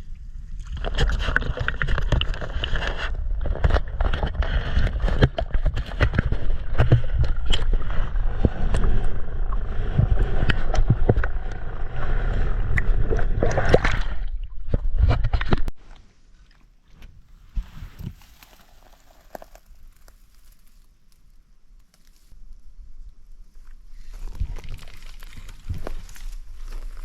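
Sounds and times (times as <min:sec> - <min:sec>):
heavy low rumble: 0:06.1 - 0:14.5
water sloshing and splashing: 0:12.6 - 0:16.6.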